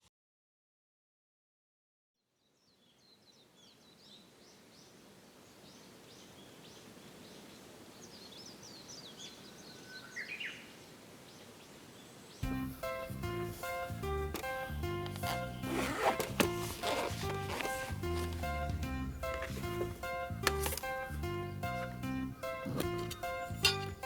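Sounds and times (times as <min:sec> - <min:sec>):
small birds chirping: 0:02.4 - 0:24.0
background hiss: 0:02.9 - 0:24.0
music: 0:12.4 - 0:24.0.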